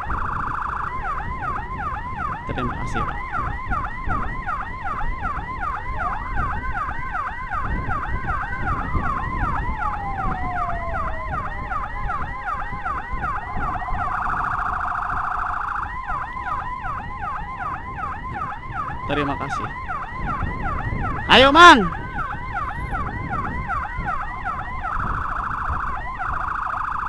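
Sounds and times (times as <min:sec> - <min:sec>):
engine and road rumble: 0:00.0 - 0:21.3, 0:21.9 - 0:27.0
electronic siren yelp: 0:00.0 - 0:27.0
tone sliding down in pitch: 0:09.4 - 0:11.9, 0:12.9 - 0:16.2.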